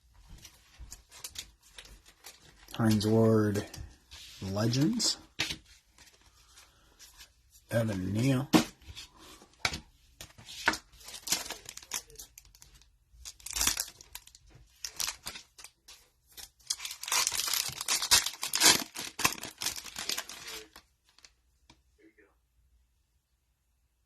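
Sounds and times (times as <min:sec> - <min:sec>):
foil wrappers tearing and crinkling: 0:11.0 - 0:15.8, 0:16.4 - 0:20.8.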